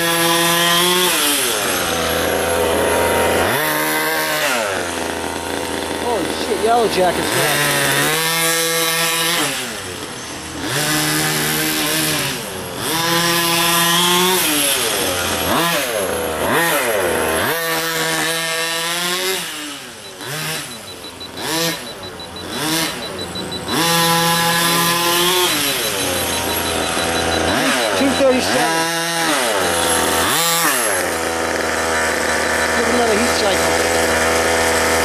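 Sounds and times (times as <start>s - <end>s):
two-stroke engine revving: 0.0s - 35.0s.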